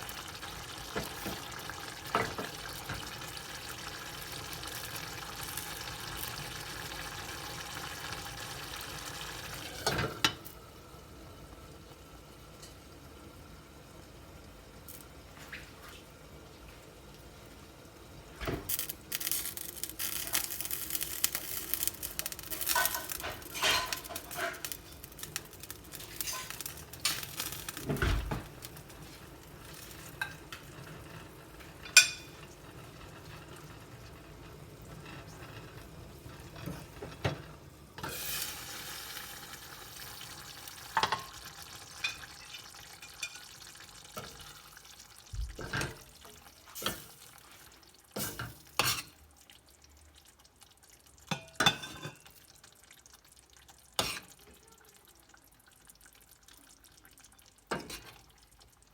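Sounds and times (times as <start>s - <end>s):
frying sizzle: 0.0s - 58.9s.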